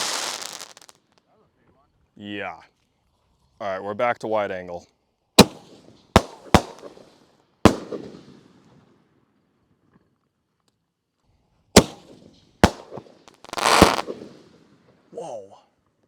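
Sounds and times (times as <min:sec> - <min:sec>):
firework bangs with echoes: 0:00.0 - 0:00.8, 0:05.4 - 0:08.9, 0:11.8 - 0:14.7.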